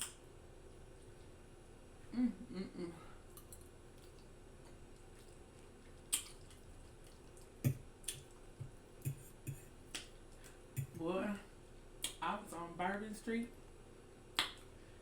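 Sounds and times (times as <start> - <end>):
wet mouth smacking while chewing: 3.2 - 11.0.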